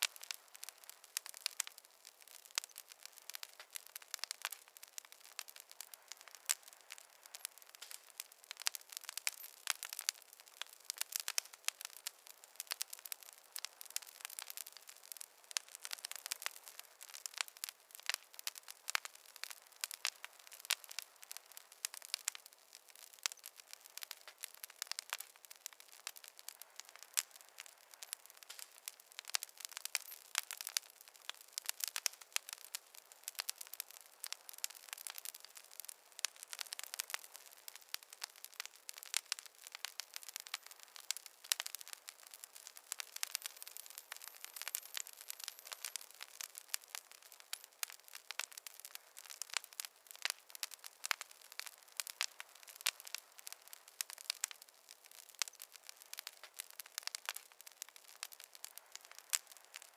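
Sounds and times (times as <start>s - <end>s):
fire crackling: 0.0s - 59.9s.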